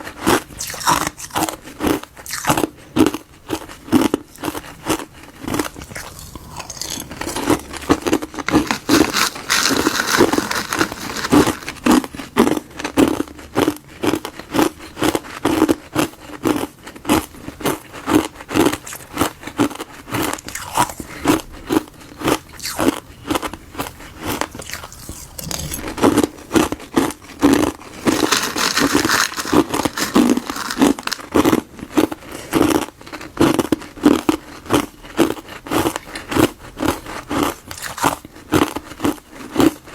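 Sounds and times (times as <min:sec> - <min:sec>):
crunching ice: 0:00.1 - 0:21.0, 0:24.2 - 0:39.9
chewing: 0:00.2 - 0:39.9.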